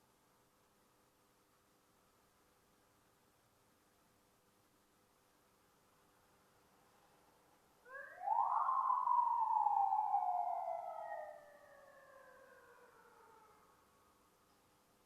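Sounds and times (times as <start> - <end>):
police siren wail: 7.9 - 13.6.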